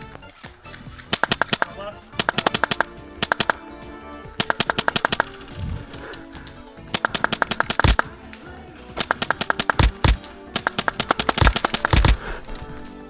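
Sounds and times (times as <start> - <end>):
airsoft gun firing bursts: 1.0 - 3.7, 4.4 - 5.5, 6.9 - 8.2, 9.0 - 12.4.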